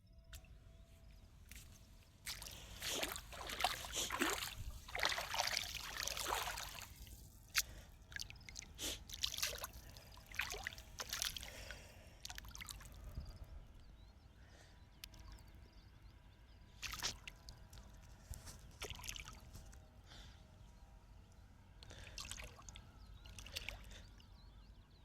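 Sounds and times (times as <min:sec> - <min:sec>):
water splashing and trickling: 0:01.5 - 0:13.1, 0:16.8 - 0:17.8, 0:18.6 - 0:19.5, 0:21.9 - 0:24.0.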